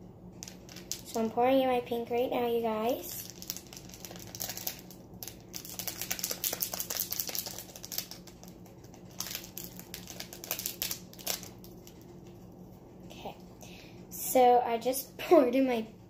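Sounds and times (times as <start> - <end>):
glitter ticking into slime: 3.2 - 12.0.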